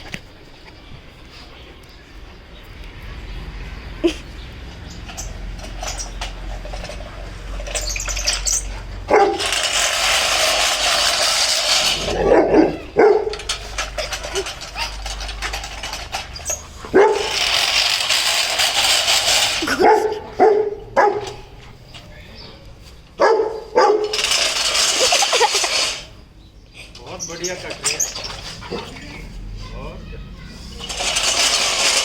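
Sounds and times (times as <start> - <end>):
lawnmower running: 4.0 - 20.2, 23.9 - 26.2, 30.6 - 32.0
puppy barking: 9.1 - 9.5, 12.1 - 13.4, 16.9 - 17.4, 19.7 - 21.5, 23.2 - 24.2.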